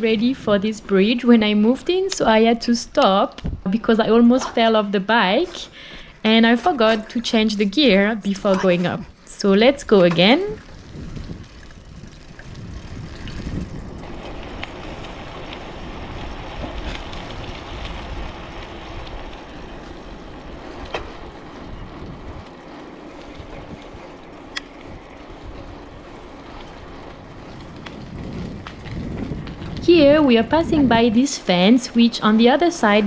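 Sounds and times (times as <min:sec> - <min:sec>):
tyre and road noise: 0:00.0 - 0:33.0
wind rumbling on microphone: 0:00.0 - 0:33.0
bike clicks and rattles: 0:05.9 - 0:31.3.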